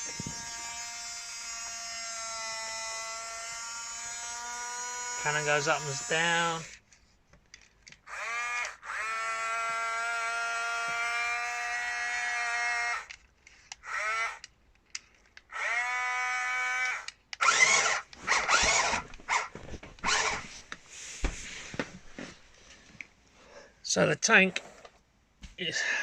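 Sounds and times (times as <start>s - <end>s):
small electric motor whining: 0.0s - 6.8s, 8.0s - 14.5s, 15.5s - 20.6s
clattering and rubbing: 18.2s - 23.0s.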